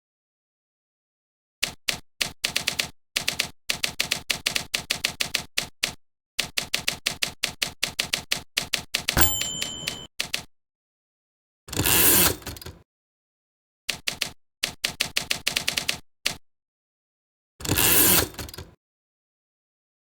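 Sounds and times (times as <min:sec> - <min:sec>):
rapid keyboard typing: 0:02.4 - 0:05.5, 0:14.1 - 0:16.0.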